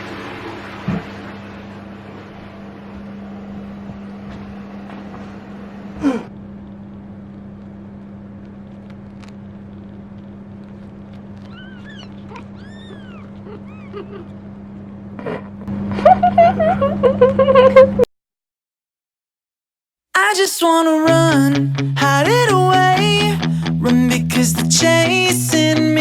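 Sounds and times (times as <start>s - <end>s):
steady low hum: 0.0s - 18.0s
cat meowing: 11.4s - 14.0s.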